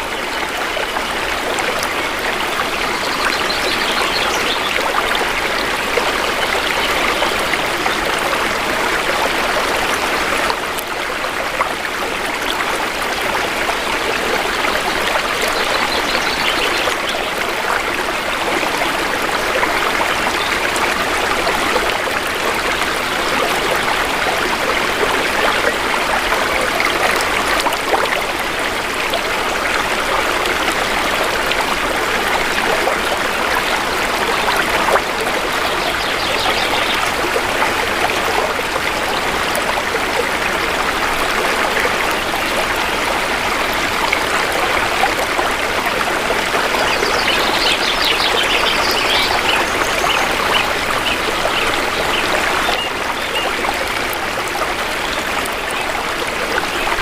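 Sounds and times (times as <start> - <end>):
river water flowing: 0.0 - 57.0.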